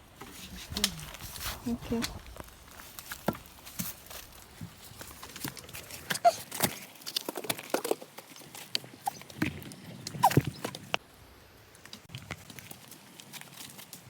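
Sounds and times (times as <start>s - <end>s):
footsteps on forest trail: 0.2s - 9.0s.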